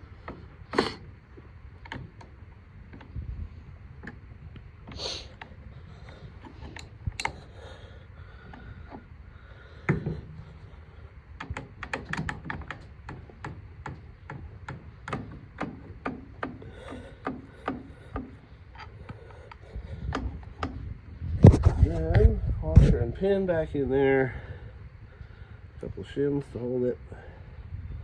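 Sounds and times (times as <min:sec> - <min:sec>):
light irregular metal clicks: 0:05.3 - 0:07.5.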